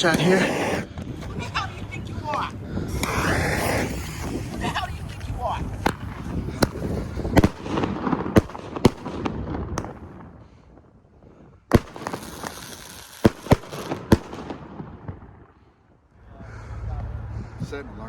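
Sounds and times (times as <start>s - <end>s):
fireworks bangs: 0.0s - 2.0s, 2.8s - 10.8s, 11.7s - 15.6s.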